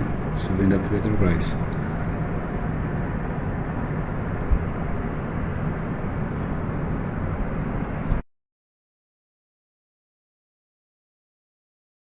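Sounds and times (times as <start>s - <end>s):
deep turbine-like refinery drone: 0.0s - 8.2s.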